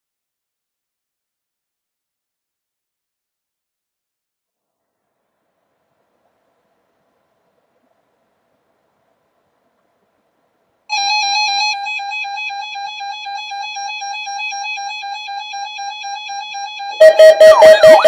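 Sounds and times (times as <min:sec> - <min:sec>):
pulsing electronic tone: 0:17.0 - 0:18.0
siren-like sweeping sound: 0:17.0 - 0:18.0.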